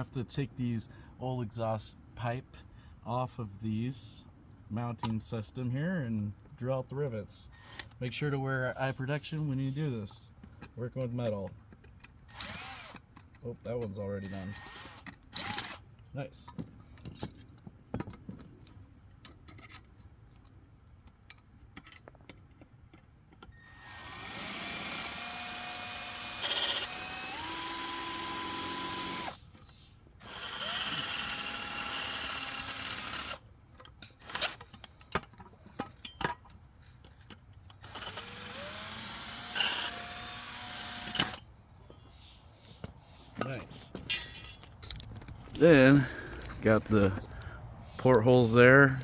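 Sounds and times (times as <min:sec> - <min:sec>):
power drill drilling metal: 0:12.3 - 0:13.0, 0:14.2 - 0:15.8, 0:23.6 - 0:29.4, 0:30.2 - 0:33.4, 0:37.8 - 0:41.4.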